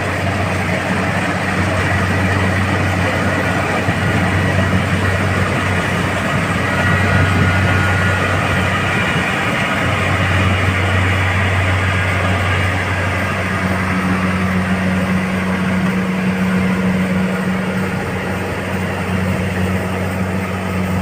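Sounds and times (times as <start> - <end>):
clatter of threshing works: 0.0 - 21.0
harvester engine hum: 0.0 - 21.0.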